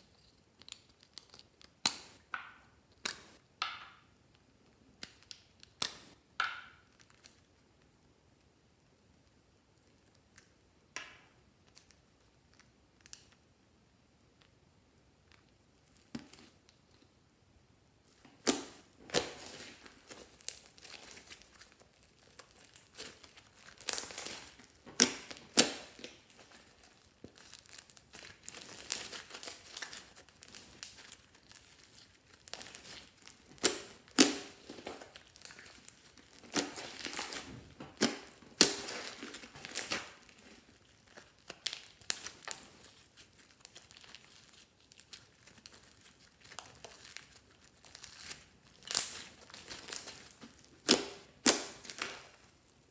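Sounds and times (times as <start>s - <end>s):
crinkling and tearing materials: 0.0s - 3.4s, 18.0s - 52.9s.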